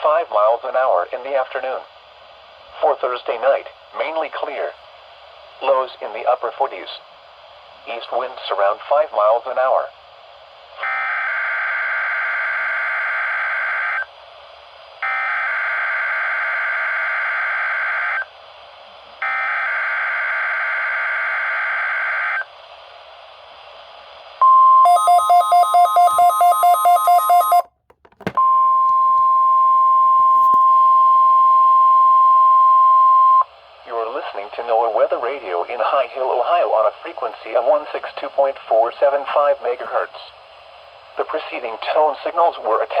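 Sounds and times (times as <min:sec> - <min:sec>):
rapid beeping: 0:24.9 - 0:27.6
warning alarm tone: 0:24.9 - 0:27.7.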